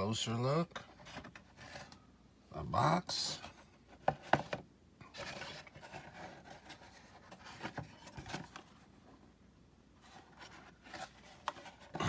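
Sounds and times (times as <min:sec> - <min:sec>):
cardboard and paper rustling: 0:00.7 - 0:01.9, 0:03.3 - 0:09.3, 0:10.0 - 0:12.0.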